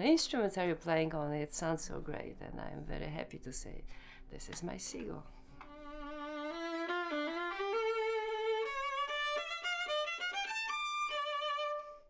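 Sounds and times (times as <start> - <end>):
solo violin melody: 5.6 - 12.0.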